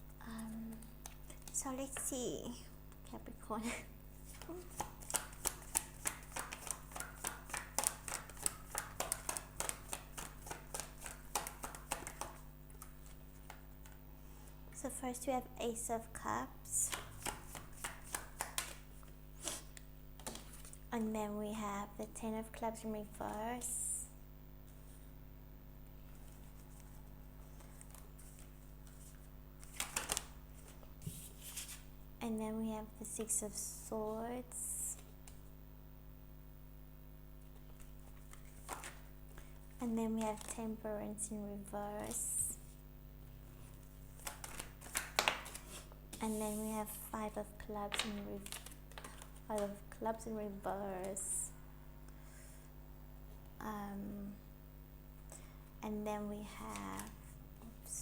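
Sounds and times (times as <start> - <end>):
low steady hum: 0.0 - 58.0
cards shuffled and snapping: 0.7 - 1.7, 4.4 - 14.0, 16.9 - 20.8, 26.2 - 31.9, 37.5 - 39.6, 40.2 - 40.6, 43.9 - 46.5, 47.8 - 49.8, 56.7 - 57.2.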